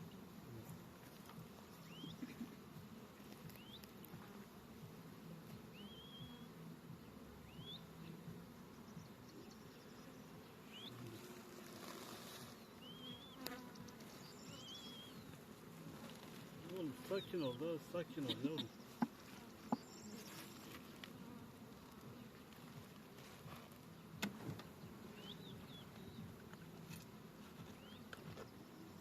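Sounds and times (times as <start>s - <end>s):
honeybees buzzing: 0.0s - 29.0s.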